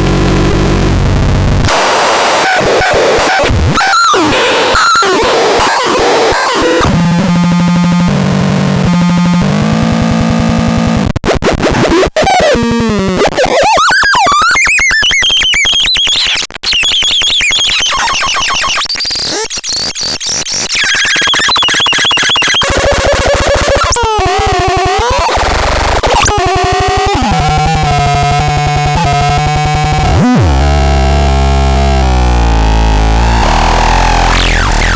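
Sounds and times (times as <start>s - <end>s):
buzzy synth drone: 0.0s - 2.1s, 26.3s - 34.9s.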